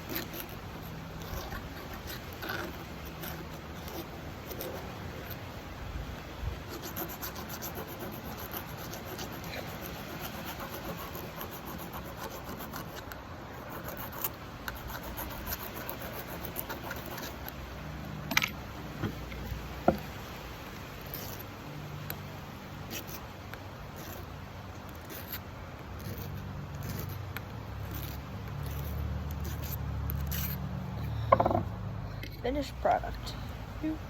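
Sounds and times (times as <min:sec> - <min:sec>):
sharp metal knocks: 0:31.3 - 0:31.7.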